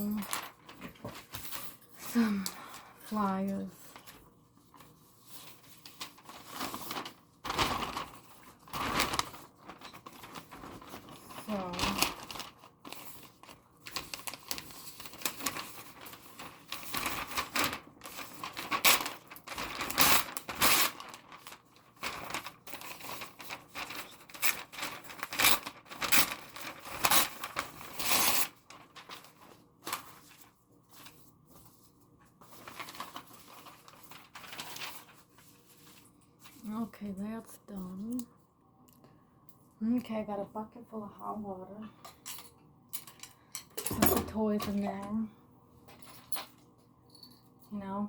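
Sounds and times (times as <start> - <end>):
paper rustling and crinkling: 0.0 - 37.1.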